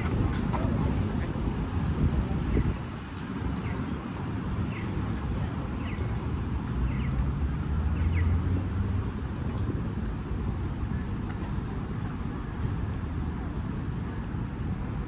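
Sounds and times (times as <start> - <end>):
passing traffic rumble: 0.0 - 15.0.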